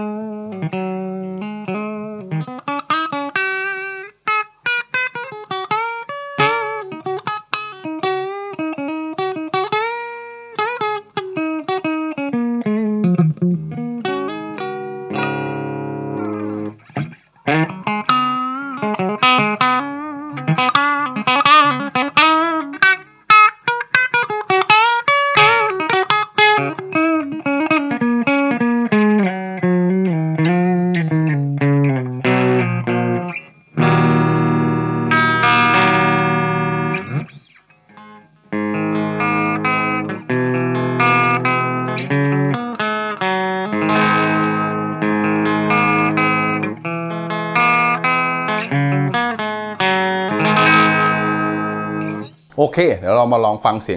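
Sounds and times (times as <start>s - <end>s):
clean electric guitar: 0.0s - 53.6s.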